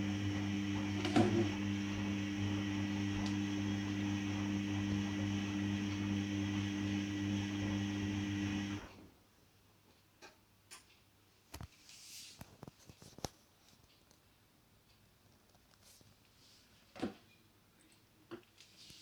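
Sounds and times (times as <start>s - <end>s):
washing machine humming: 0.0s - 9.1s.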